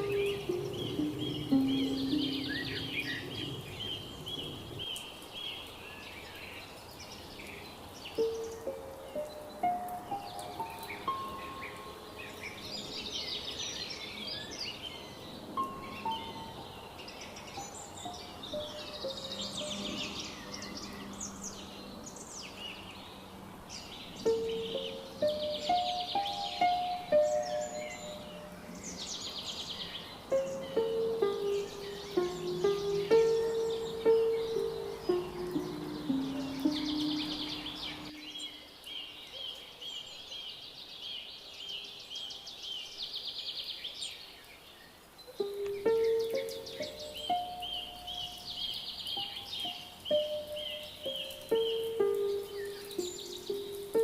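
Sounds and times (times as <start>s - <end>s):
low background music notes: 0.0s - 3.8s, 8.2s - 13.1s, 15.5s - 20.9s, 24.2s - 28.9s, 30.3s - 38.5s, 45.4s - 54.0s
descending lower notes: 0.0s - 4.9s, 30.3s - 38.5s
small birds chirping: 0.0s - 54.0s
songbirds trilling: 0.0s - 54.0s.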